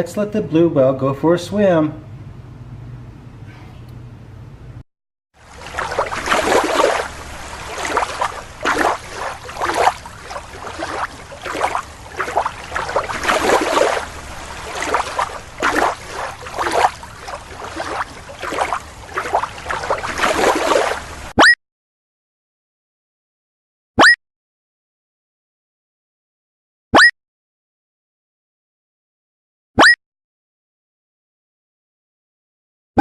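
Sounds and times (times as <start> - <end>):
water sloshing in aquarium: 5.4 - 21.4.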